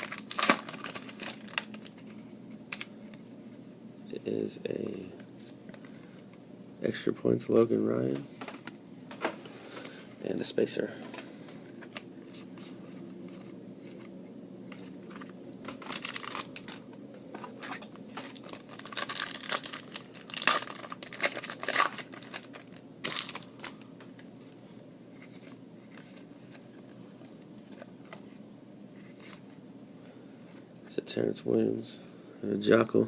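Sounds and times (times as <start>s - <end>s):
wrapper ripping and crinkling: 0.0s - 2.9s, 15.0s - 16.8s, 17.6s - 23.8s.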